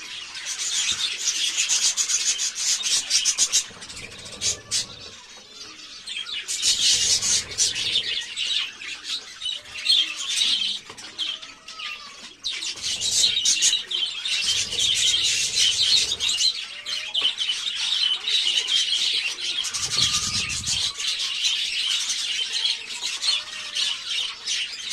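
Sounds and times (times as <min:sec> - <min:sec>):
flock of small birds chirping: 0:00.0 - 0:24.9.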